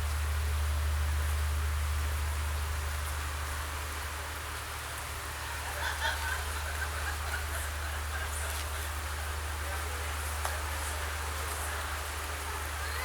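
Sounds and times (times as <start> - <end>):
outdoor hiss: 3.1 - 13.0
faint distant voices: 4.8 - 13.0.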